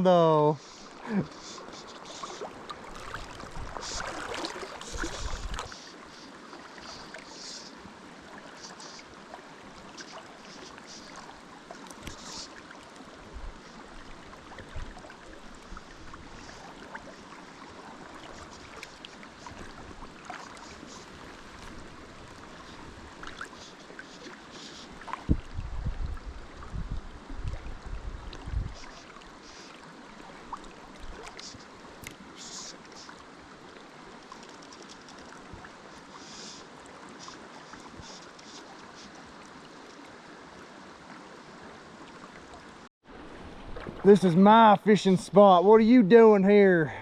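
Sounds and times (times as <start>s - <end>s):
river flowing: 0.0s - 25.6s, 28.8s - 47.0s
faint small clicks: 11.8s - 12.4s, 31.2s - 33.2s, 34.2s - 35.5s.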